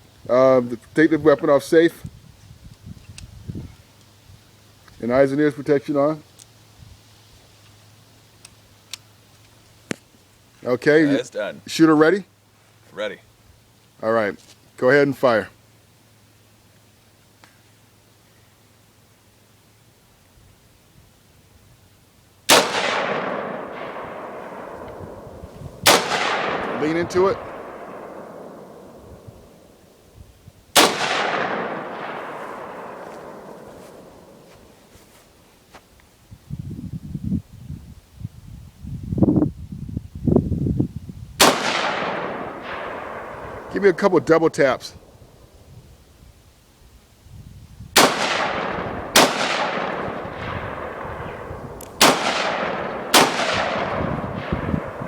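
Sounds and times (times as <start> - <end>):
gunshot with long echo: 22.5 - 29.8, 30.8 - 34.5, 41.4 - 43.9, 48.0 - 55.0.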